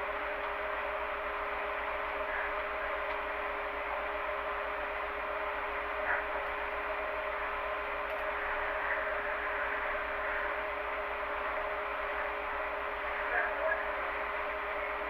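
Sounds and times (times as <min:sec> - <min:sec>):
faint tick: 0:03.0 - 0:03.2.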